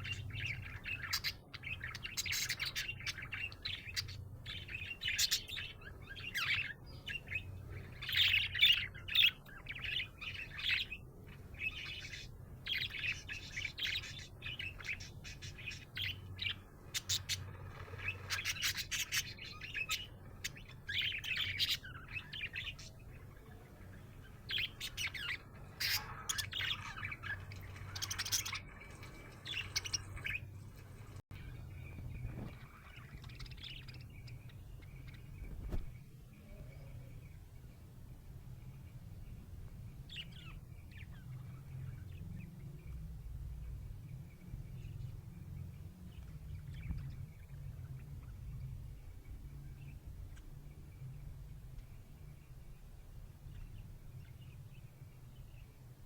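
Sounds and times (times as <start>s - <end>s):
budgerigar chirping and warbling: 11.6s - 28.7s.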